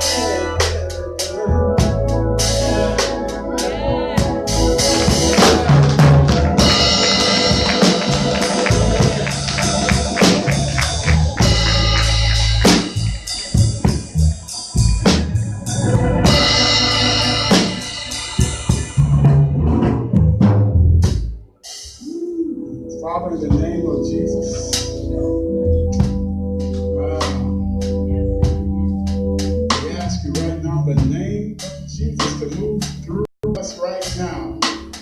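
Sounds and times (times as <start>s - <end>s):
organ and keyboard chords: 0.0s - 35.0s
drum kit with cymbal crashes: 4.2s - 22.1s.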